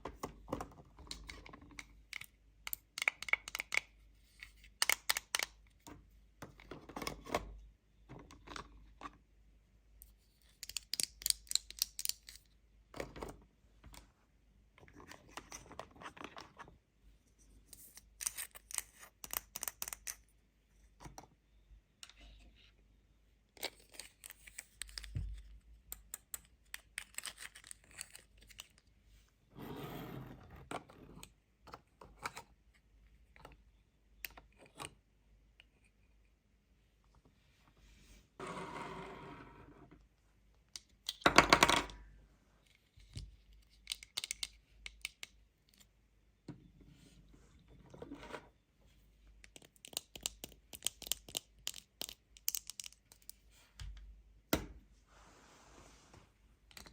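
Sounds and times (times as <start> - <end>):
plastic pieces clicking and tapping: 0.5 - 4.0, 4.8 - 5.6, 10.6 - 12.5, 17.8 - 20.2, 43.2 - 45.9, 49.4 - 54.0.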